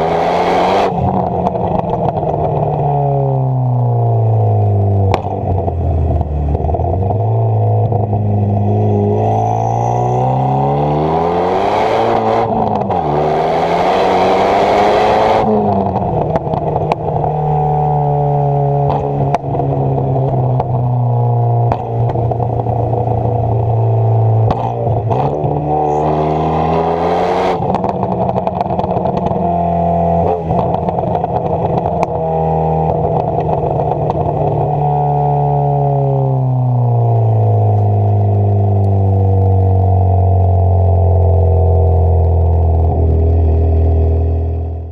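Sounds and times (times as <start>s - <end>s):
car engine revving: 0.0s - 44.9s
exhaust pops and crackles: 1.0s - 3.0s, 15.6s - 17.4s, 18.8s - 23.8s, 27.6s - 29.5s, 30.2s - 34.9s.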